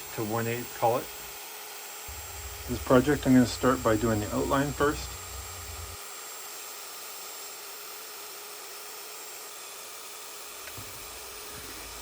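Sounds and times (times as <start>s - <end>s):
low hum: 2.1s - 6.0s
steady hiss: 2.1s - 6.0s.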